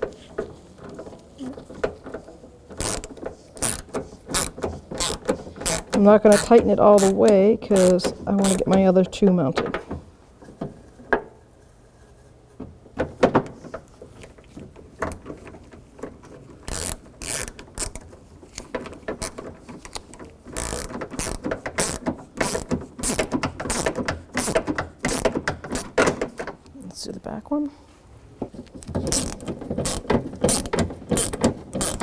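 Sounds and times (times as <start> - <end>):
socket ratchet clicking: 2.8 - 8.9, 16.7 - 18.0, 18.6 - 26.1, 29.1 - 32.0.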